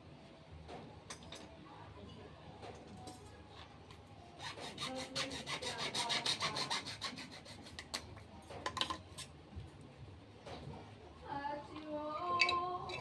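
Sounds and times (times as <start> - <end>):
hand tool rasping on plastic pipe: 4.4 - 8.0.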